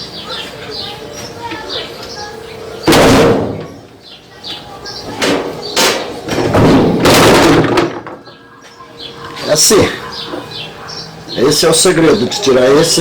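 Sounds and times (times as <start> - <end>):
loud knock: 2.9 - 3.7, 5.2 - 8.2.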